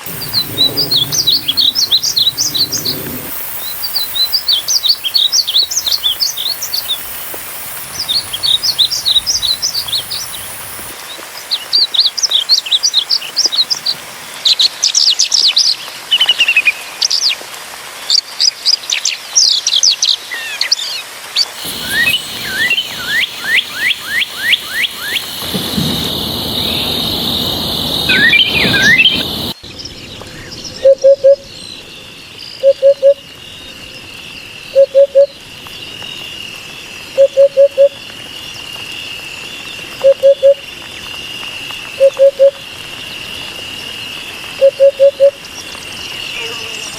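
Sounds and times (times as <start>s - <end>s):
small birds chirping: 0.0s - 15.5s, 21.4s - 37.0s
steady high buzz: 21.6s - 29.6s.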